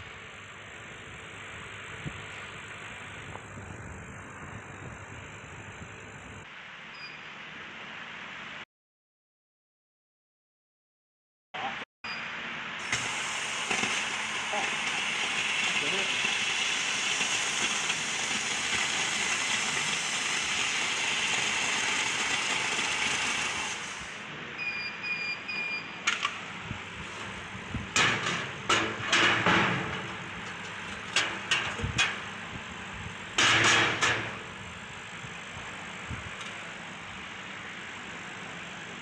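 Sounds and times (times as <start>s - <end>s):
short beeps: 6.9s - 7.3s, 24.6s - 26.0s
laser cutter hissing: 12.8s - 24.3s.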